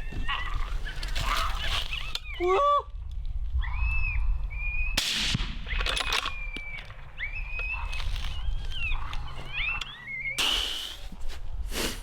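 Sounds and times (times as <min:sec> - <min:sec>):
coyote-like howl calls: 0:03.6 - 0:04.8, 0:06.4 - 0:10.4.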